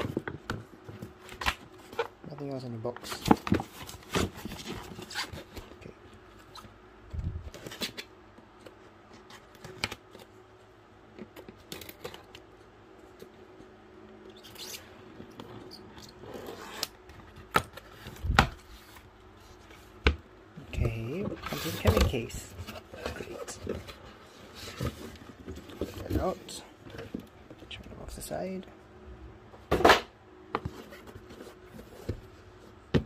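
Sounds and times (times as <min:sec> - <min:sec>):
packaging rustling and scraping: 0:00.0 - 0:06.7, 0:07.5 - 0:08.1, 0:14.3 - 0:20.0, 0:20.7 - 0:27.4, 0:30.6 - 0:32.8.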